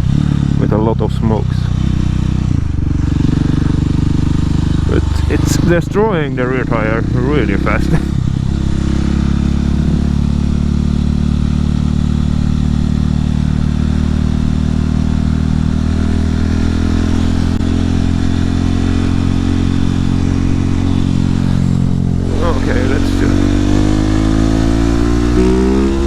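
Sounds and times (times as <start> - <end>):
motorcycle engine running: 0.0 - 26.0.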